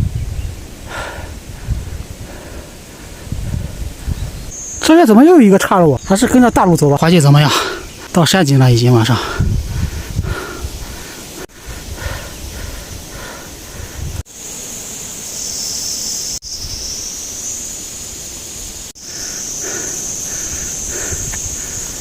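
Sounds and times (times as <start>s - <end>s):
wind buffeting microphone: 0.0s - 4.6s, 5.8s - 14.3s, 20.3s - 22.0s.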